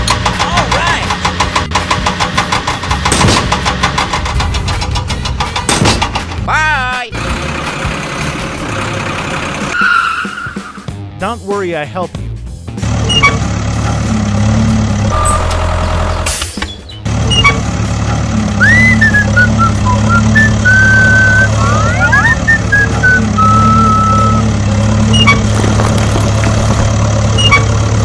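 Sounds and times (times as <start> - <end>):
truck engine running: 0.0 - 28.0
high whistled melody: 18.6 - 25.4
warbling beep: 20.4 - 24.4.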